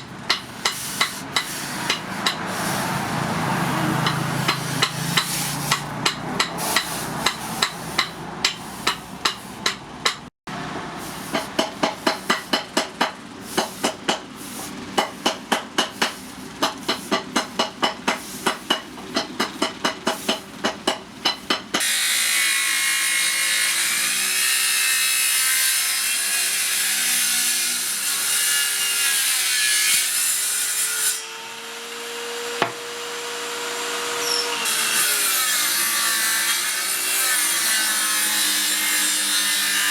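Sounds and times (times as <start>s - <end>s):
electric grinder: 0.8s - 6.1s, 21.8s - 39.9s.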